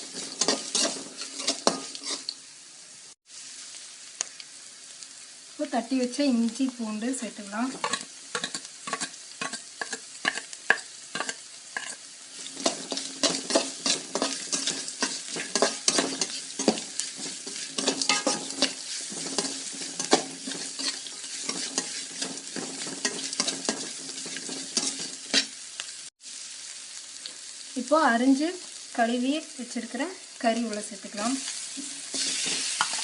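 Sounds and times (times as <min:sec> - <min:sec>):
spatula scraping pan: 0:00.0 - 0:02.4, 0:07.7 - 0:25.6, 0:31.5 - 0:33.0
onions sizzling in hot oil: 0:00.0 - 0:33.0.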